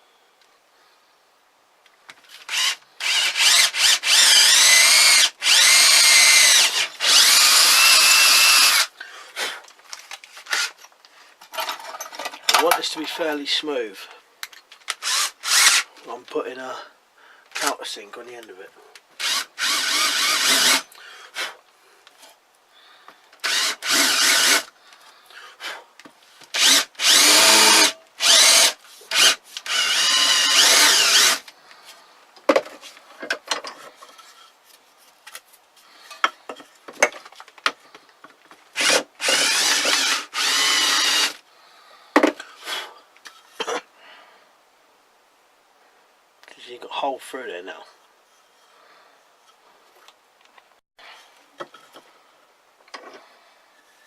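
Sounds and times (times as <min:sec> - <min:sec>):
electric drill bursts: 0:02.5 - 0:08.9, 0:15.0 - 0:15.9, 0:19.2 - 0:20.9, 0:23.4 - 0:24.7, 0:26.5 - 0:31.4, 0:38.8 - 0:41.4.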